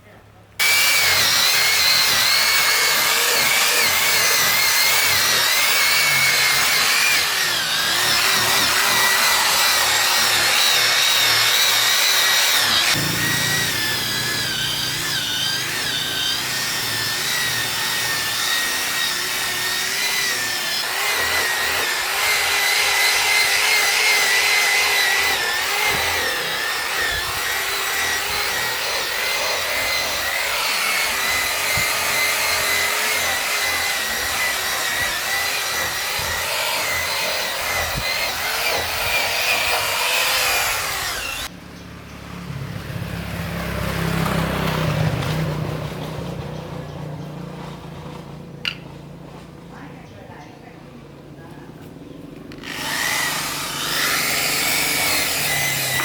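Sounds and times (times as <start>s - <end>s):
electric power tool whining: 0.6s - 41.5s, 52.5s - 56.0s.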